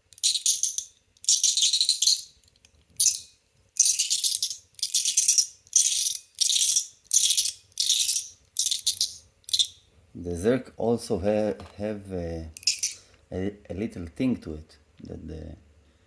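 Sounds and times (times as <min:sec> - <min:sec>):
metallic fidget toy rattle: 0:00.1 - 0:09.8, 0:12.6 - 0:13.0.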